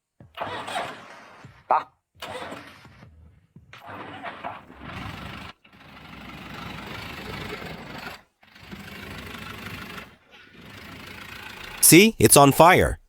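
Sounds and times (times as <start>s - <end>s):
diesel engine cranking and running: 2.2s - 2.8s, 3.8s - 11.8s.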